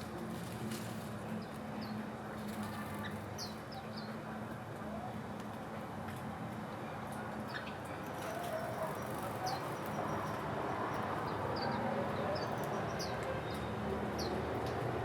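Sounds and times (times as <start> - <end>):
small birds chirping: 8.6 - 14.4.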